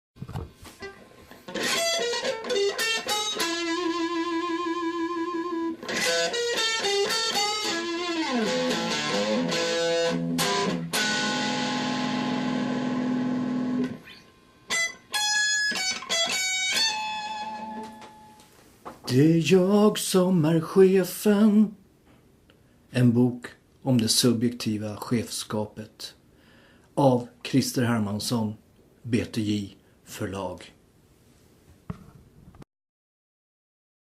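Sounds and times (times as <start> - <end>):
electric guitar solo: 0.8 - 18.4.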